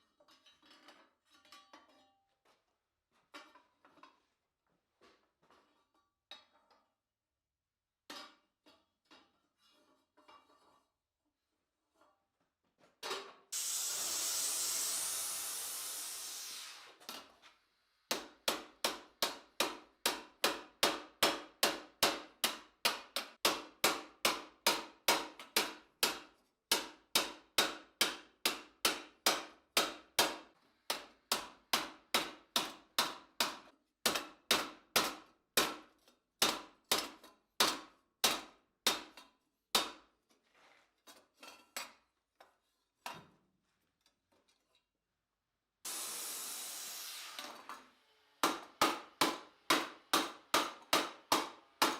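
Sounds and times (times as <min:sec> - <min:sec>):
hammer striking steel plate: 0:18.1 - 0:35.8, 0:48.4 - 0:51.9.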